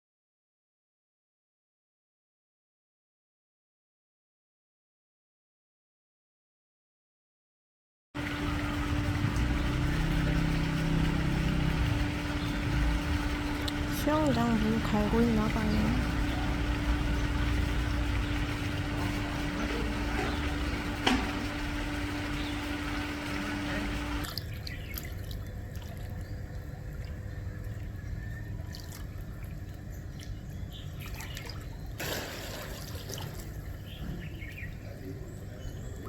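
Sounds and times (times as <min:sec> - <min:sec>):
water running and trickling: 0:08.2 - 0:27.9
steady low hum: 0:08.2 - 0:36.0.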